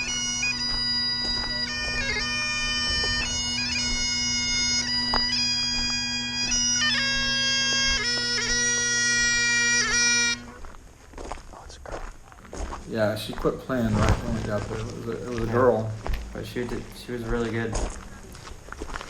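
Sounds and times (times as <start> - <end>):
bagpipes playing a tune: 0.0 - 10.8, 13.3 - 19.0.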